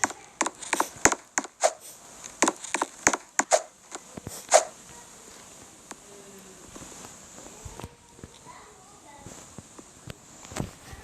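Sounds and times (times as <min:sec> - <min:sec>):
sharp knocks: 0:00.0 - 0:01.8, 0:02.4 - 0:03.7.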